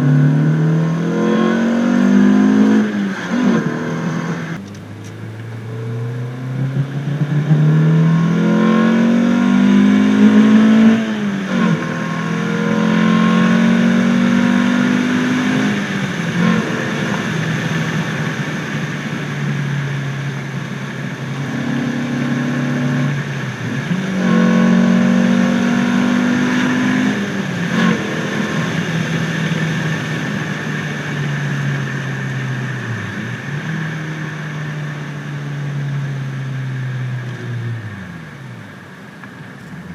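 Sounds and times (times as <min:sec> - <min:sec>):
car engine accelerating hard: 0:00.0 - 0:39.9.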